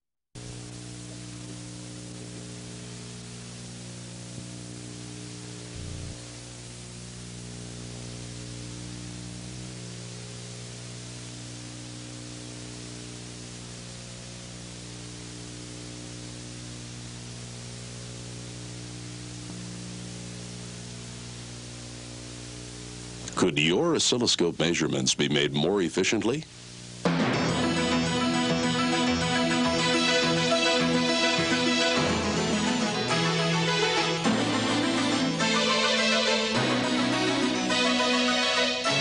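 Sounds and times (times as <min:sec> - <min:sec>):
low electrical hum: 0:00.4 - 0:27.1
steady hiss: 0:00.4 - 0:39.0
short low blip: 0:05.7 - 0:06.2.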